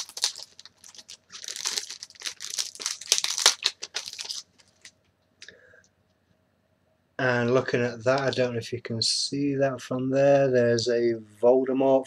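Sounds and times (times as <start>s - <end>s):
plastic packaging crinkling: 0.0s - 5.0s.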